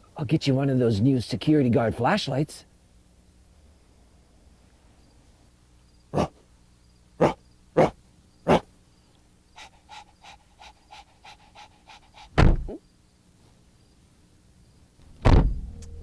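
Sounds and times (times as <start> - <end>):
dog panting: 9.6 - 12.4.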